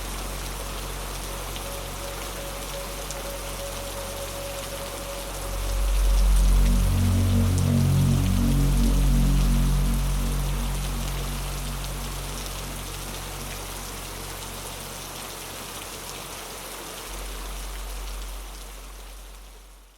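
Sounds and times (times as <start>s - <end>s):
low dark ambient drone: 0.0s - 15.2s
steady rain: 0.0s - 19.9s.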